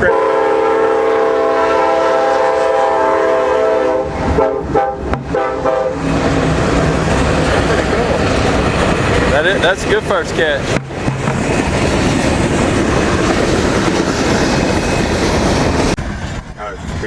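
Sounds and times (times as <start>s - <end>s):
locomotive air horn: 0.0s - 6.4s
passing train noise: 0.0s - 17.0s.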